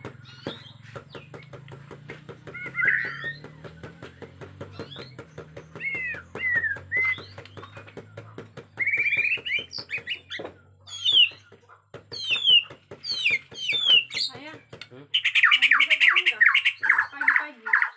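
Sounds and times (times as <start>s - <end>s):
bird singing whistled phrases: 2.5s - 3.4s, 5.8s - 7.4s, 8.8s - 10.3s, 15.2s - 17.9s.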